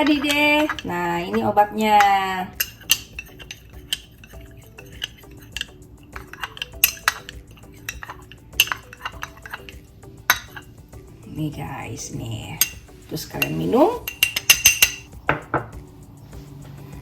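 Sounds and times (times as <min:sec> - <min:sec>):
spoon clinking against container: 0:00.0 - 0:10.7, 0:12.5 - 0:15.7
spoon stirring thick mixture: 0:00.0 - 0:10.8, 0:12.4 - 0:15.1.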